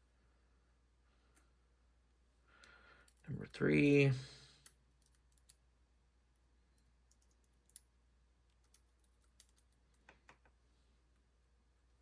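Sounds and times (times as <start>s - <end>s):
small metal lock parts clicking: 4.6s - 5.6s, 6.8s - 7.9s, 8.6s - 10.4s.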